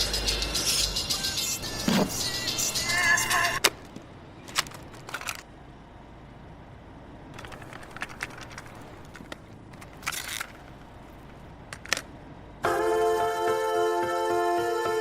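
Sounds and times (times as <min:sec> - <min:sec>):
clicks and crackles: 0:03.6 - 0:05.5, 0:07.3 - 0:12.2
low steady rumble: 0:05.4 - 0:12.6.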